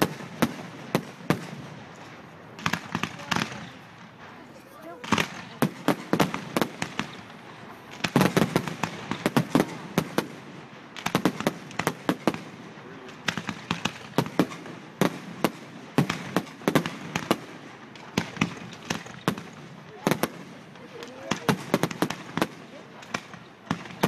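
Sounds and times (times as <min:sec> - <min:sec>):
fireworks bangs and crackles: 0:00.0 - 0:24.0.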